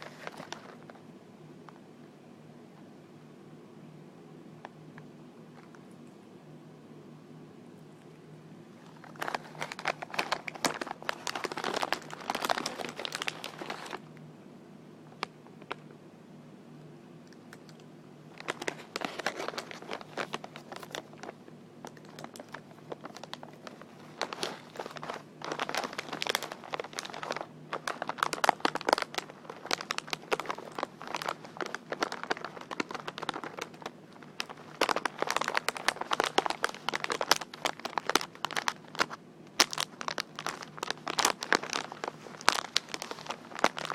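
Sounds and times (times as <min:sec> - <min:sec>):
crinkly material crackling: 0:00.0 - 0:01.0, 0:08.0 - 0:14.2, 0:15.1 - 0:16.0, 0:17.3 - 0:43.9.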